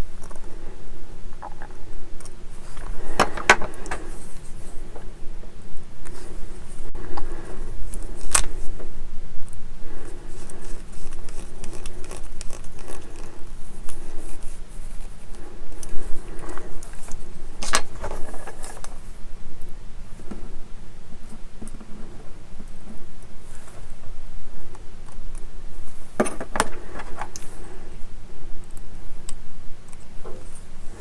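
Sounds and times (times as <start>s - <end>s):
light clicks of handling parts: 1.4s - 5.1s.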